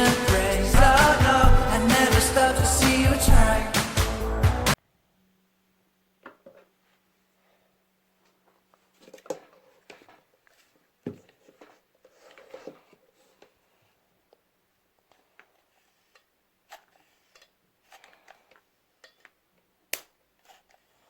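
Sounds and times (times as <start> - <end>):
taps and rustles of craft materials: 8.2 - 13.6.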